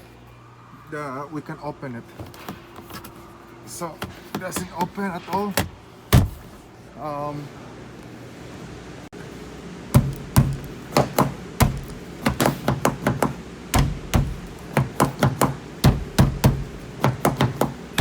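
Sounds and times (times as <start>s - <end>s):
sharp knocks on car door: 5.6s - 6.5s, 10.0s - 18.0s.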